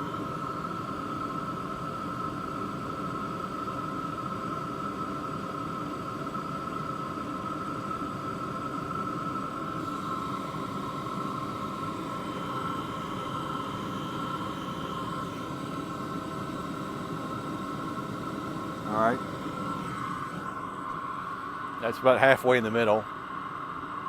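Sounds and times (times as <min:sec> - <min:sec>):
heater blower fan whine: 0:00.0 - 0:24.0
combustion and airflow rushing: 0:08.7 - 0:24.0.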